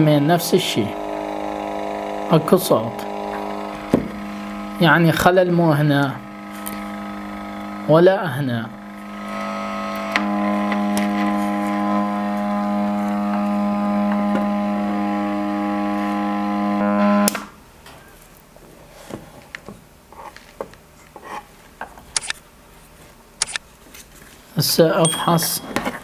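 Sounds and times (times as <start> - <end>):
distorted amplifier buzz: 0.0 - 17.7.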